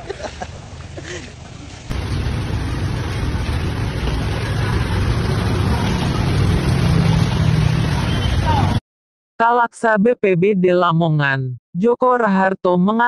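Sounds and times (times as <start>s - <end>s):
heavy rain: 0.0s - 8.8s.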